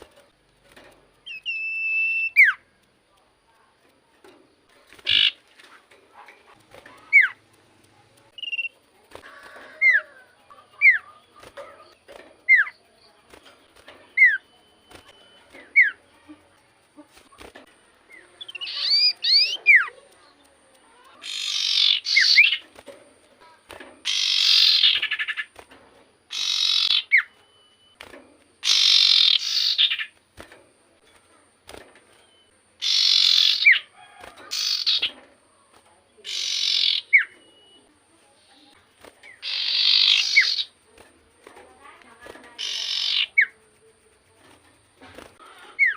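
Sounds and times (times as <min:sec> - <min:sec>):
bird whistles: 0:01.3 - 0:02.6, 0:26.3 - 0:28.0, 0:28.6 - 0:30.1, 0:32.3 - 0:33.9, 0:36.3 - 0:37.8, 0:39.3 - 0:40.7, 0:42.6 - 0:43.5
bird harsh raspy calls: 0:05.0 - 0:05.4, 0:18.2 - 0:19.9, 0:21.2 - 0:22.6, 0:24.0 - 0:25.6, 0:26.3 - 0:27.3, 0:28.6 - 0:30.2, 0:32.8 - 0:33.9, 0:34.5 - 0:35.1, 0:36.2 - 0:37.4, 0:39.3 - 0:40.8, 0:42.6 - 0:43.5, 0:45.4 - 0:45.9.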